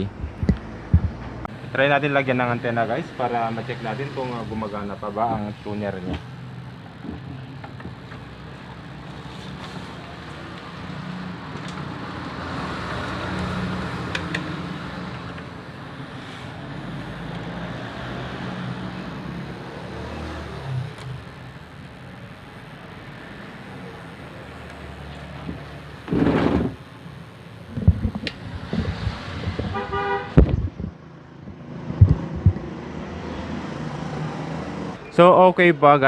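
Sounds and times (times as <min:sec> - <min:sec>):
television static hiss: 0:15.0 - 0:31.2
low hum: 0:18.7 - 0:33.8.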